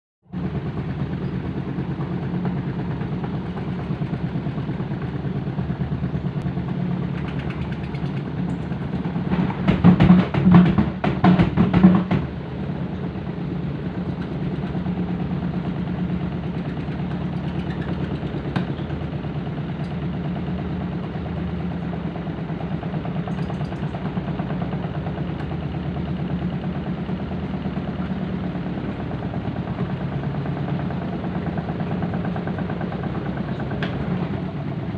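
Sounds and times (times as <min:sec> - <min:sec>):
washing machine spinning: 0:00.4 - 0:34.9
washing machine banging: 0:09.1 - 0:12.4.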